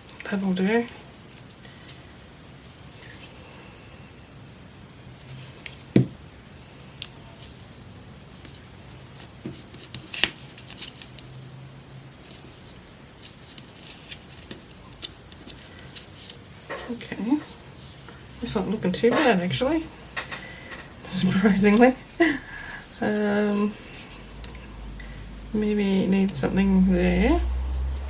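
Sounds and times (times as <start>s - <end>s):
paper rustling: 8.4s - 11.3s, 12.2s - 24.6s.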